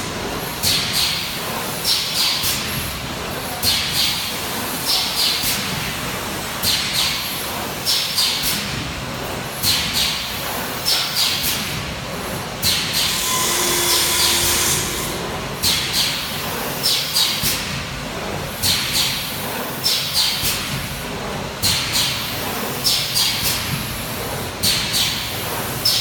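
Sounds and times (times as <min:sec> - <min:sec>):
machine clicking and hissing: 0:00.3 - 0:08.8, 0:09.6 - 0:17.9, 0:18.5 - 0:26.0
long steady machine hiss: 0:12.3 - 0:17.7.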